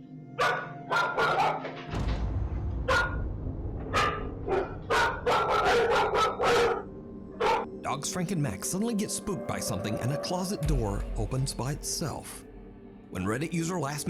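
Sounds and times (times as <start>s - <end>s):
dogs barking sharply: 0.4s - 1.8s, 4.0s - 7.7s
low rumble: 1.9s - 5.9s, 10.6s - 13.6s.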